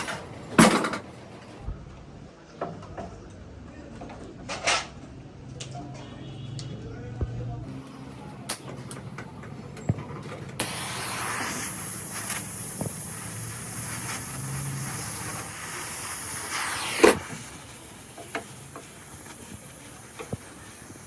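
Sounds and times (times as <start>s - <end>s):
air tool click: 10.6s - 21.0s
compressed air hissing: 10.6s - 21.0s.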